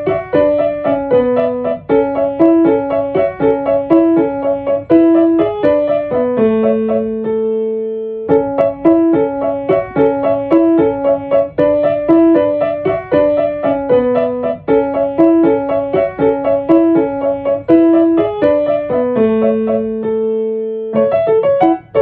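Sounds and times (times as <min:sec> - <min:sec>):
solo piano music: 0:00.0 - 0:22.0.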